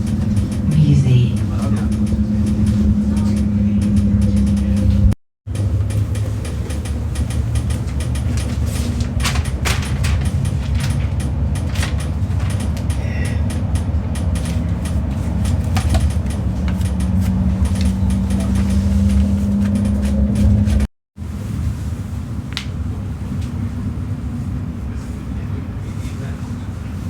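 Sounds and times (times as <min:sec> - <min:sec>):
train cabin rumble: 0:00.0 - 0:27.0
running gear rattling clicks: 0:05.6 - 0:20.8.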